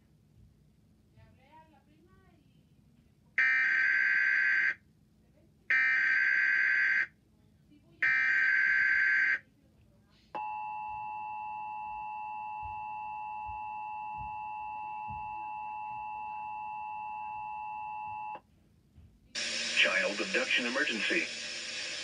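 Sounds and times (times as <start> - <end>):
buzzy digital data burst: 19.4 - 22.0.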